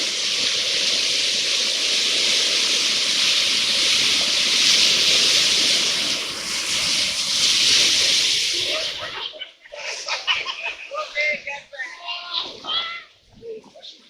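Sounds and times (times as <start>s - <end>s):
rushing river rapids: 0.0s - 9.2s.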